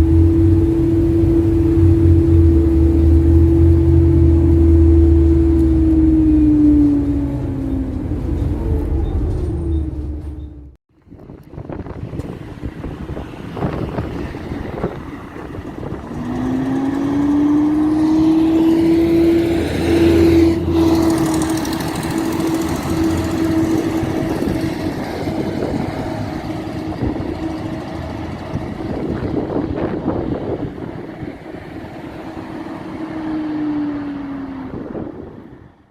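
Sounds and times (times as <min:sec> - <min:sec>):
exhaust ticking: 0:00.0 - 0:10.8, 0:14.9 - 0:30.7
bus engine whine and hum: 0:00.0 - 0:35.9.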